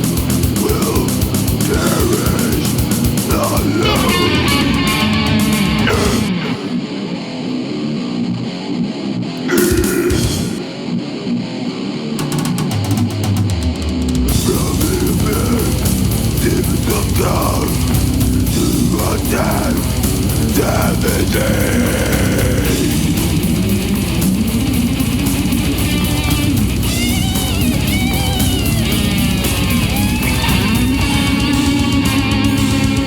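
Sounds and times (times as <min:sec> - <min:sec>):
death metal band playing: 0:00.0 - 0:33.0
distorted electric guitar riff: 0:00.0 - 0:33.0.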